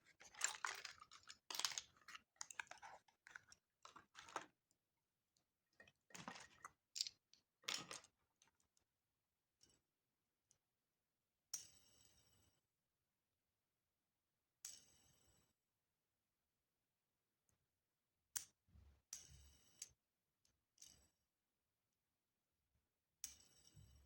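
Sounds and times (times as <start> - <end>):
plastic wrappers crinkling: 0.0 - 4.5, 6.1 - 8.1.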